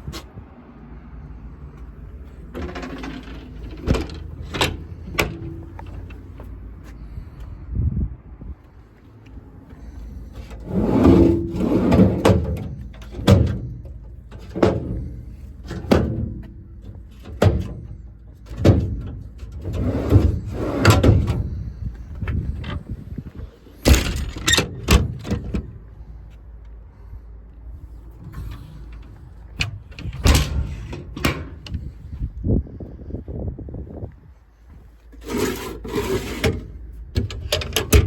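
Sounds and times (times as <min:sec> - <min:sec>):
metal doors clanking and rattling: 0:01.8 - 0:06.4, 0:09.8 - 0:26.0, 0:27.9 - 0:32.1, 0:35.2 - 0:38.0.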